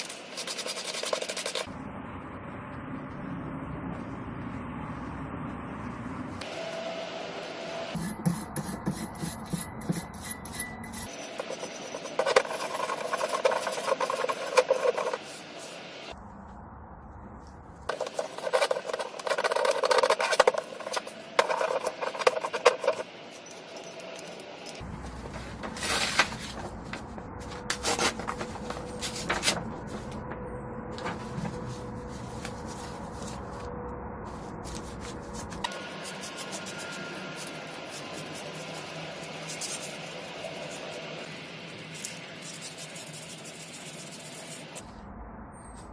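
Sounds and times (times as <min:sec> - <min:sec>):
hand sanding or filing: 0:00.0 - 0:01.7, 0:08.6 - 0:15.9, 0:34.6 - 0:44.8.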